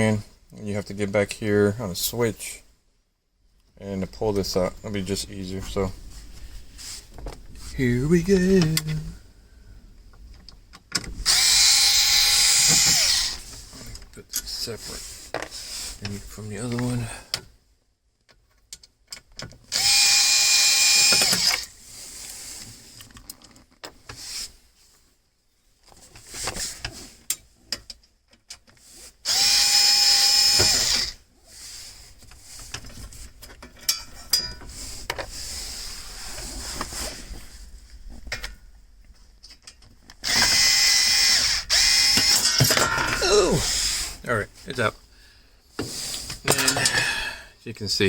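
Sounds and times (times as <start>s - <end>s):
power driver spinning out screws: 11.2s - 13.6s, 19.7s - 21.7s, 29.2s - 31.2s, 40.2s - 44.0s
handling loose parts: 32.1s - 35.5s, 39.3s - 44.0s, 45.8s - 47.2s.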